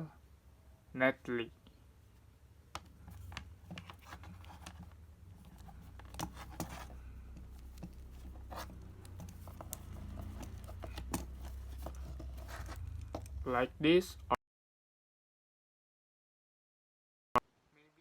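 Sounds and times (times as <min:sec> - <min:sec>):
cable rustling and scraping: 0:02.8 - 0:13.6.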